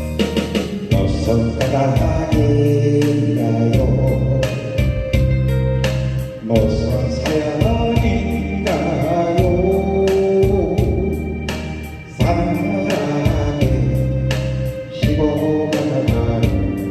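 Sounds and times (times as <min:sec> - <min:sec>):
pop song with guitar and keyboard: 0:00.0 - 0:16.9.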